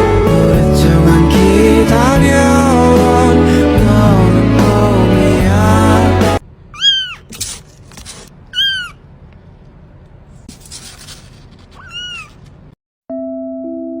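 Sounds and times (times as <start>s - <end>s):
cat meowing: 6.7s - 7.3s, 8.5s - 9.0s, 11.8s - 12.4s.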